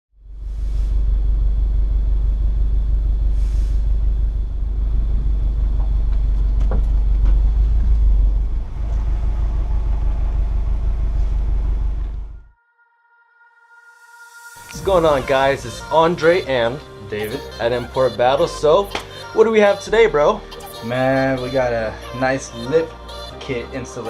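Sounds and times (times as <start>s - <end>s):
car engine rumbling: 0.2s - 12.5s.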